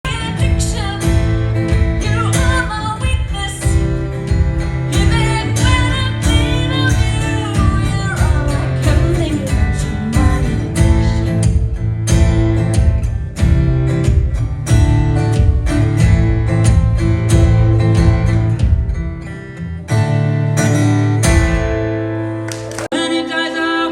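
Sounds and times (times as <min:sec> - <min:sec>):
strummed acoustic guitar: 0:00.0 - 0:23.9
person singing: 0:04.8 - 0:11.4, 0:22.6 - 0:23.9.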